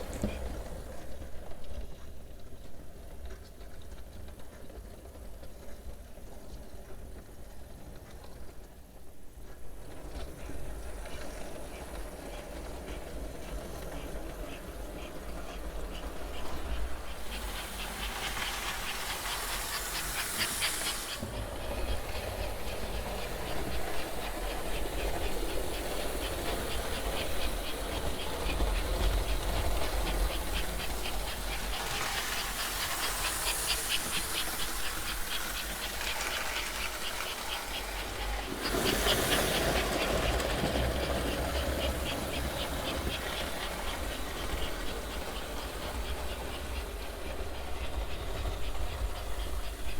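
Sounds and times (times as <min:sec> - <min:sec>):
toy train wheels clicking: 0:10.7 - 0:49.9
toy train motor whirring: 0:10.8 - 0:49.9.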